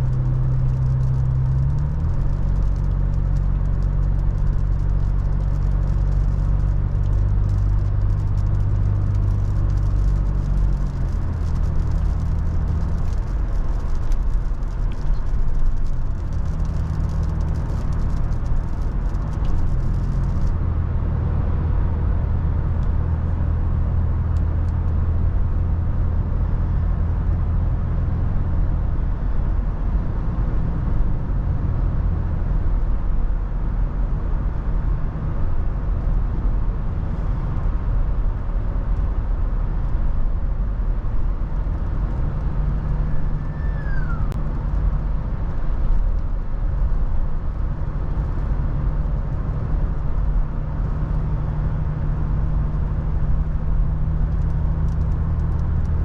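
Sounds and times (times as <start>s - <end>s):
car engine humming: 0.0s - 26.2s, 36.4s - 56.0s
wind and road noise: 0.0s - 56.0s.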